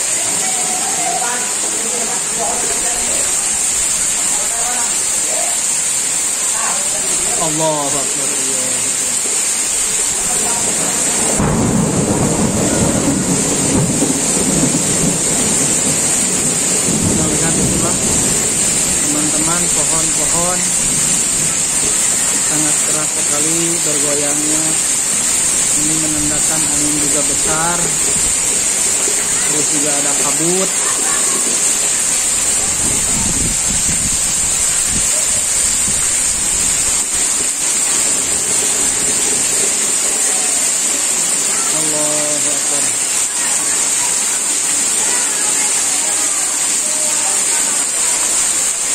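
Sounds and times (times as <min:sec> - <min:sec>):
heavy rain pouring: 0:00.0 - 0:48.9
rolling thunder rumble: 0:09.4 - 0:41.7
wind gusting on microphone: 0:31.7 - 0:39.6.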